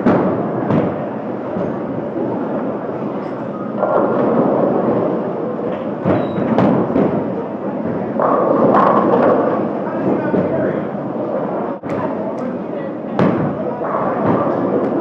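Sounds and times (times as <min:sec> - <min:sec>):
bowling balls rolling: 0:00.0 - 0:12.3, 0:13.1 - 0:15.0
bowling pins crashing: 0:05.9 - 0:09.7.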